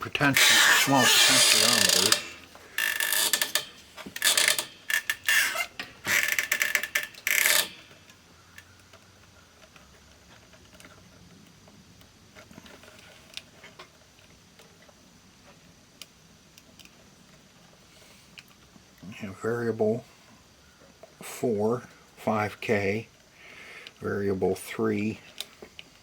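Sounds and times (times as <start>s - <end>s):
scraping handling noises: 0.0s - 8.2s.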